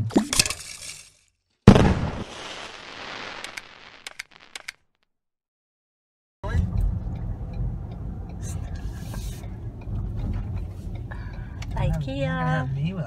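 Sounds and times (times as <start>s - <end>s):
car engine rumble: 6.4s - 13.0s
road noise: 6.4s - 13.0s.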